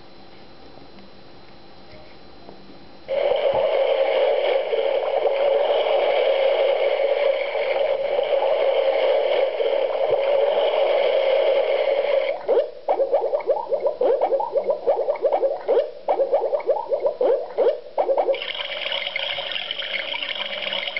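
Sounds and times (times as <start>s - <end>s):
buzzy electronic tone: 3.1s - 20.9s
rising electronic chirps: 5.0s - 20.3s.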